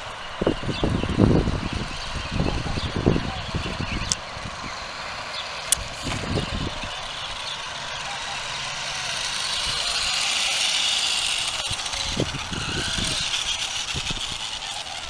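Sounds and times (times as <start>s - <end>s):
toy truck motor whirring: 0.0s - 15.0s.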